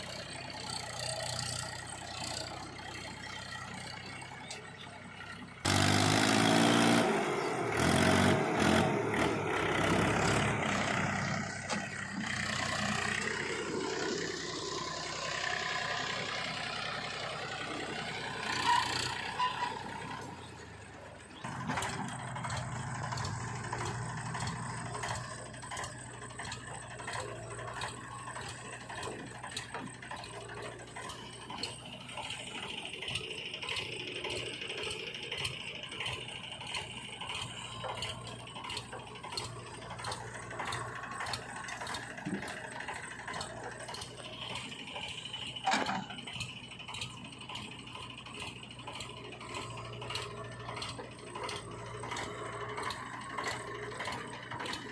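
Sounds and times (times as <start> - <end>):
backhoe engine hum: 0.0 - 54.9
clattering and ticking: 21.3 - 54.9.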